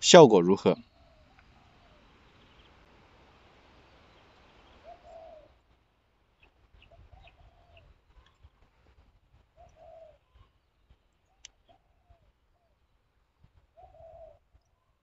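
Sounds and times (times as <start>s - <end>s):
soft hiss: 0.0s - 10.0s
small birds chirping: 0.2s - 15.0s
dove cooing: 0.8s - 2.8s, 3.6s - 5.8s, 6.5s - 10.6s, 13.4s - 14.6s.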